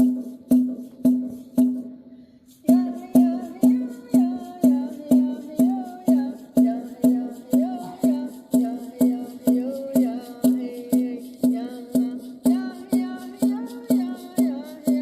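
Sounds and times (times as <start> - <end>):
drum beaten steadily: 0.0 - 15.0
chanted vocal melody: 2.6 - 15.0.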